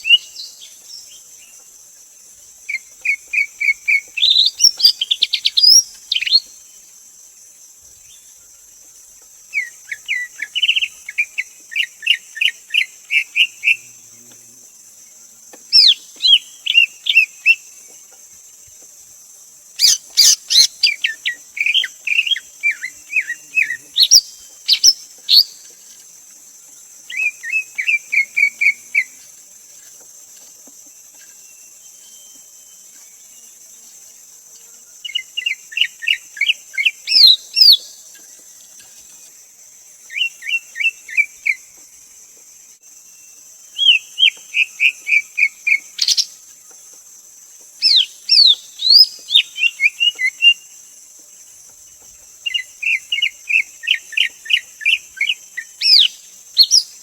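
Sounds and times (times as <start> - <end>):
steady high hiss: 0.0 - 57.0
bird whistling song: 2.7 - 6.5, 19.8 - 25.6, 35.1 - 37.9, 43.7 - 46.3, 47.8 - 50.6, 52.5 - 57.0.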